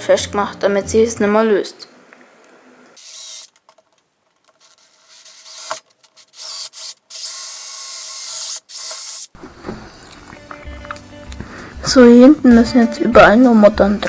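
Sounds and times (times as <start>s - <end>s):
hand tool rasping: 4.6s - 9.4s.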